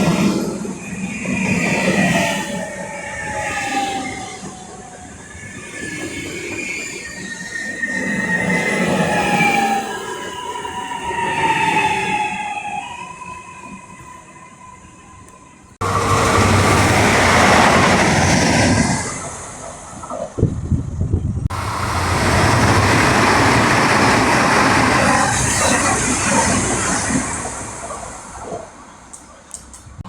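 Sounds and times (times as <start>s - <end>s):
train wheels rumbling on rails: 15.8s - 30.0s.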